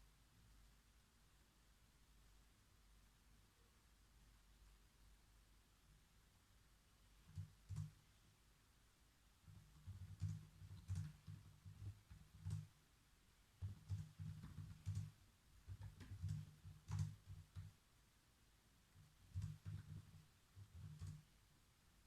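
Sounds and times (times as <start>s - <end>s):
typing on computer keyboard: 7.2s - 8.0s, 9.5s - 12.7s, 13.6s - 17.8s, 19.0s - 21.3s.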